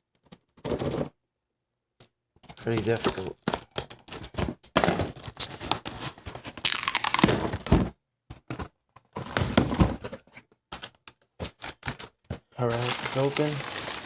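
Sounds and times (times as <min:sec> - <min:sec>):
knife cutting package tape: 0:06.6 - 0:07.3
packaging ripping: 0:06.6 - 0:07.5, 0:12.7 - 0:14.0.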